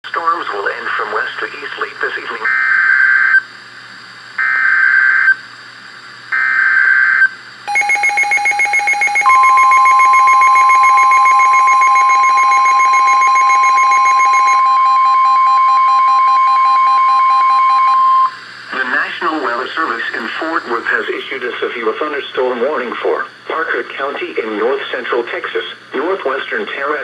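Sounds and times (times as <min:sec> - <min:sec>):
pulsing electronic alarm: 0:06.3 - 0:18.4
screeching digital data bursts: 0:06.4 - 0:15.1
steady warning alarm tone: 0:06.4 - 0:18.4.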